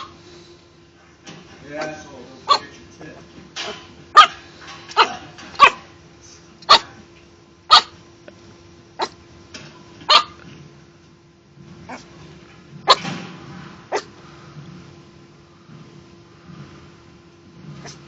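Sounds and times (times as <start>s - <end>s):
dog barking: 2.5s - 2.7s, 4.1s - 4.4s, 5.0s - 5.9s, 6.7s - 7.0s, 7.7s - 8.0s, 10.1s - 10.4s, 12.9s - 13.1s, 13.9s - 14.1s.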